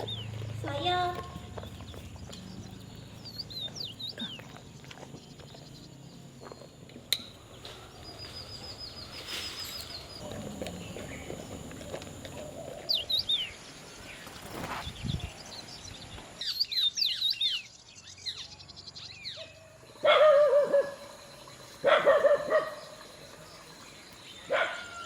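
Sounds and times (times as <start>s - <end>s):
small birds chirping: 0.0s - 25.0s.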